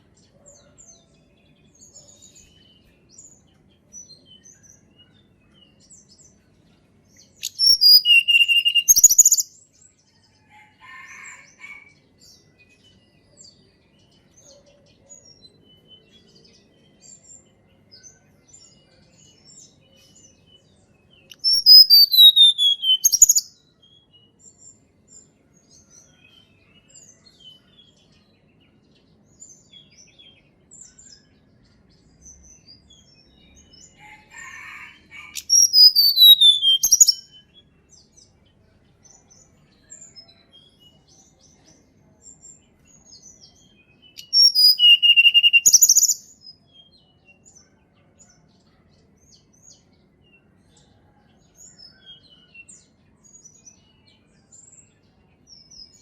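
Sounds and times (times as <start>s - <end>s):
soft high bird chirps: 7.2s - 9.6s, 21.2s - 24.0s, 34.0s - 37.8s, 44.0s - 46.7s
songbird whistled notes: 7.4s - 9.4s, 21.4s - 23.5s, 35.3s - 37.3s, 44.2s - 46.2s.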